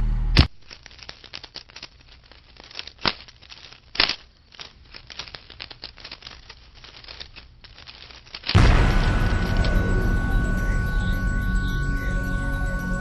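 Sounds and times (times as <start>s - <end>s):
small clicks and rattling: 0.5s - 8.6s.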